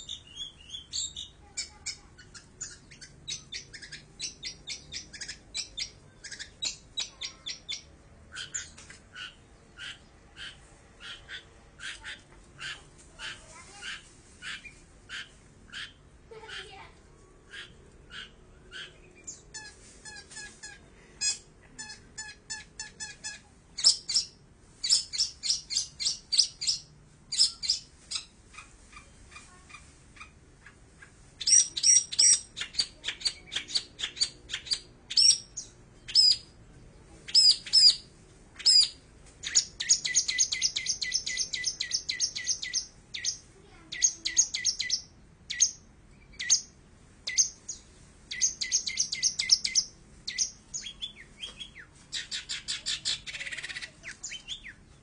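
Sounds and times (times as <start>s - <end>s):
bird singing with trills: 0.0s - 12.0s, 23.8s - 28.3s, 31.4s - 36.5s, 37.3s - 55.0s.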